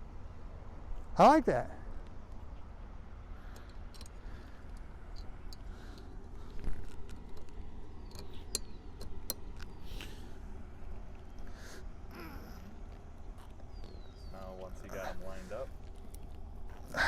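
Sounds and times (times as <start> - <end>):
steady low rumble: 0.0 - 17.0
light clicks and taps on poles: 3.5 - 11.6, 12.8 - 17.0.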